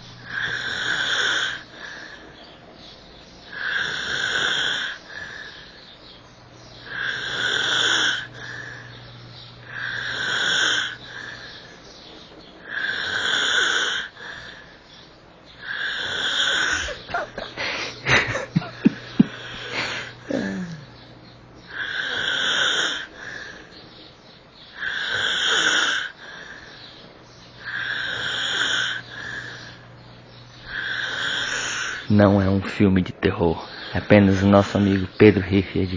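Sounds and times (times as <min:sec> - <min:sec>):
man snoring: 0:00.2 - 0:02.2, 0:03.5 - 0:05.7, 0:06.9 - 0:08.8, 0:09.7 - 0:11.5, 0:12.7 - 0:14.7, 0:15.6 - 0:21.0, 0:21.7 - 0:23.6, 0:24.8 - 0:26.5, 0:27.6 - 0:29.8, 0:30.7 - 0:32.3.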